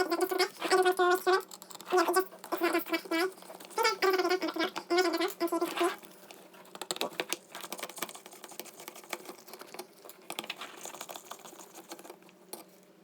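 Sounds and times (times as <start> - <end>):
small parts clicking and tapping: 0.1 - 2.7, 6.0 - 12.8.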